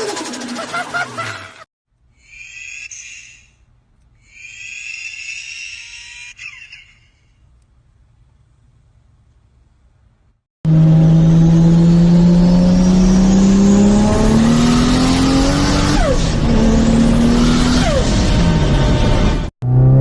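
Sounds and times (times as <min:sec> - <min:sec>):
car engine accelerating hard: 0:10.7 - 0:20.0.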